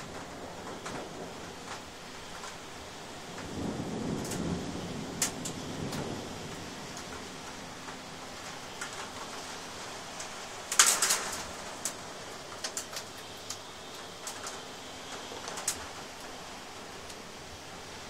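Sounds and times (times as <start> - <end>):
heavy rain hiss: 0.0 - 18.0
raindrops ticking on surface: 0.0 - 18.0.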